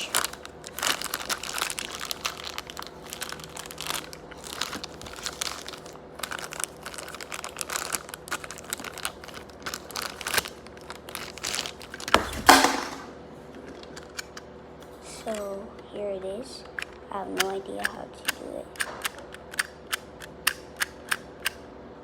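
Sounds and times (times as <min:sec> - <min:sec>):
plastic packaging crinkling: 0:00.0 - 0:14.4.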